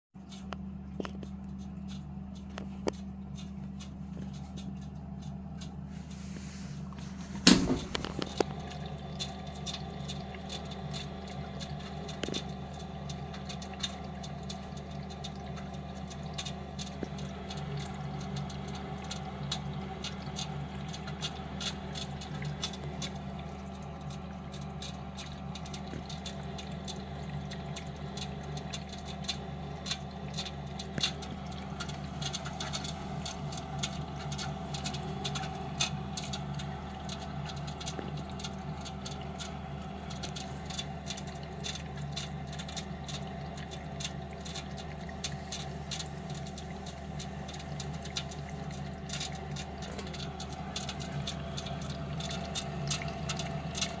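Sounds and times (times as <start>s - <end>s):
furnace humming: 0.2s - 10.4s.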